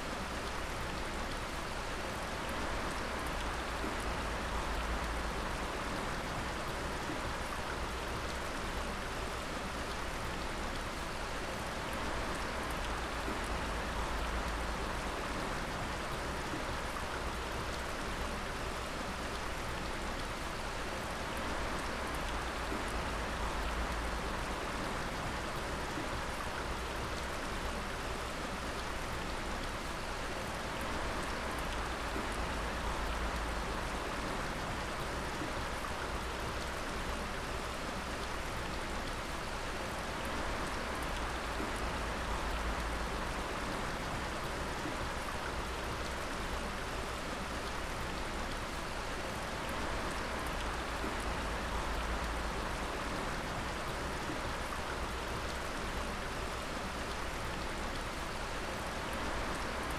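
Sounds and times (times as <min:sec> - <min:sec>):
water dripping: 0:30.8 - 0:59.9.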